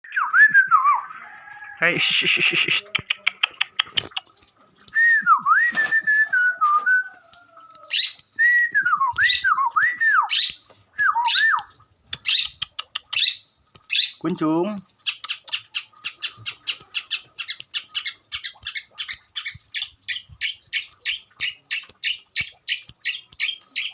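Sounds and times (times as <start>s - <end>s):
harsh bird chattering and clicks: 2.2s - 5.0s, 7.3s - 8.4s, 10.3s - 23.9s
bird singing whistled notes: 7.9s - 11.7s.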